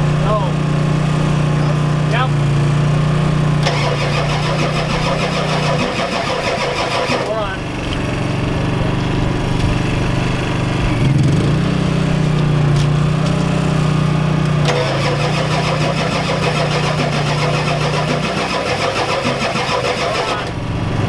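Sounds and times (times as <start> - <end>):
diesel engine cranking: 0.0 - 21.0
fast even rattle: 3.6 - 7.5, 14.7 - 20.6.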